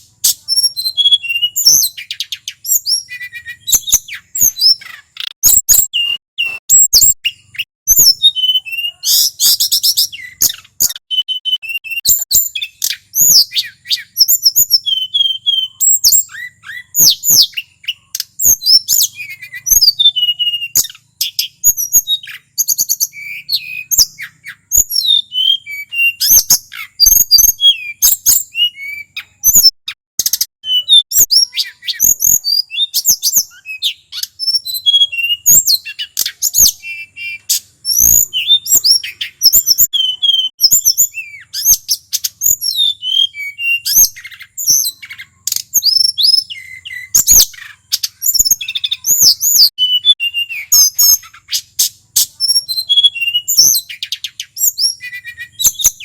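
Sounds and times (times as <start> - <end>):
flycatcher singing whistled phrases: 0.0 - 56.0.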